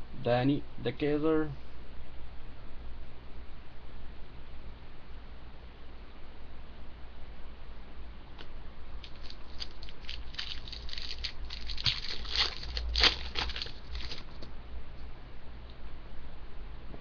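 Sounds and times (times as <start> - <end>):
foil wrapper crinkling and tearing: 9.0 - 14.5.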